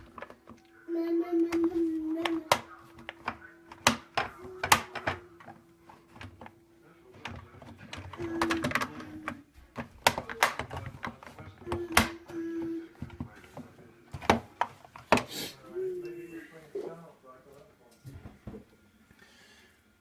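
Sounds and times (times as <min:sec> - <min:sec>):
plastic clicks and knocks: 0:00.0 - 0:00.6, 0:01.4 - 0:06.6, 0:07.2 - 0:12.4, 0:13.0 - 0:15.3.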